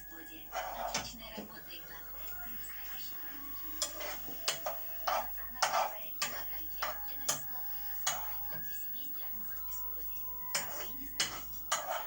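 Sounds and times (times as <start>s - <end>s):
metal spoon clinking on dish: 10.5s - 12.0s.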